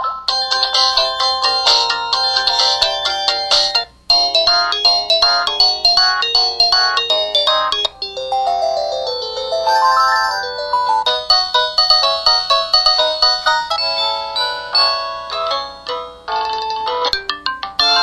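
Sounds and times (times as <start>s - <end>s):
phone ringtone melodies: 0.0s - 16.2s, 16.9s - 18.0s.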